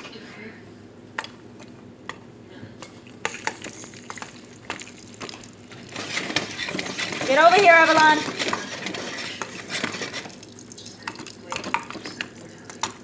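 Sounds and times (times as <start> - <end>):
popcorn kernels popping: 2.9 - 13.0
oil sizzling: 3.0 - 13.0.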